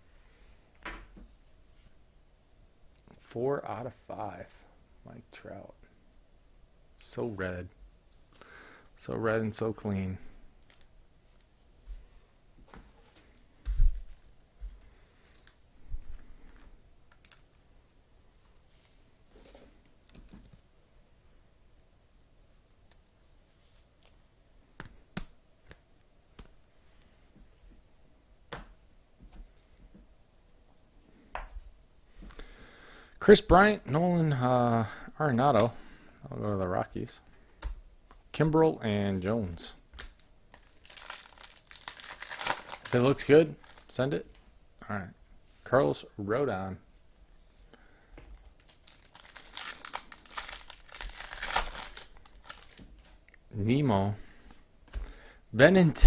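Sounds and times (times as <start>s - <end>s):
packaging crinkling and tearing: 16.5s - 17.6s, 40.0s - 44.0s, 48.5s - 53.4s.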